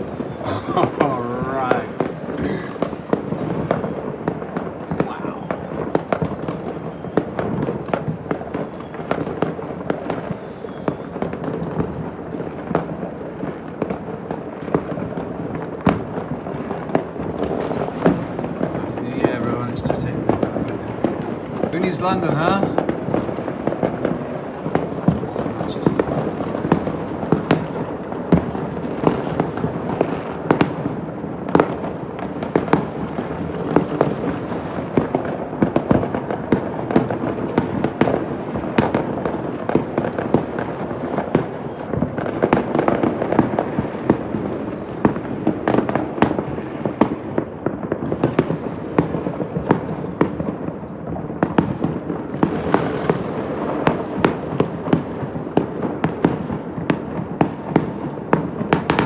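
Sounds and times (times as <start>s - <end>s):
distant fireworks crackle and rumble: 0.0s - 59.0s.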